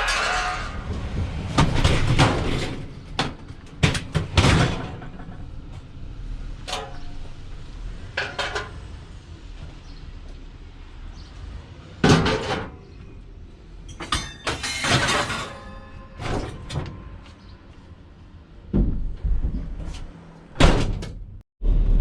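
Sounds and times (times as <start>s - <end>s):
scrap metal knocking and clattering: 0.0s - 5.9s, 8.0s - 9.0s, 12.0s - 12.9s, 13.9s - 17.5s.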